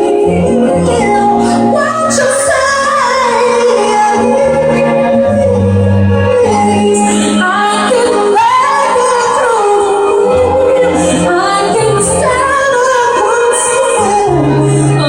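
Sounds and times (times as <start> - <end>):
musical accompaniment with bass: 0.0 - 15.0
woman singing pop ballad: 0.0 - 15.0.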